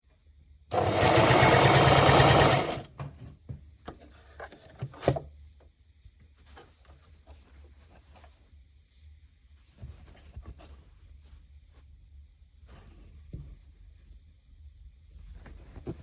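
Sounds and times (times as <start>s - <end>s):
sewing machine running: 0.7s - 2.9s.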